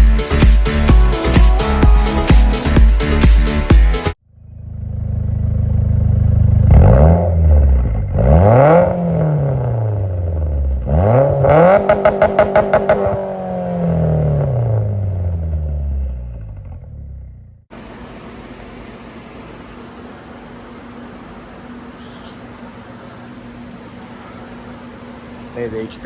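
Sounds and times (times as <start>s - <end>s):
car engine accelerating through gears: 4.4s - 17.4s.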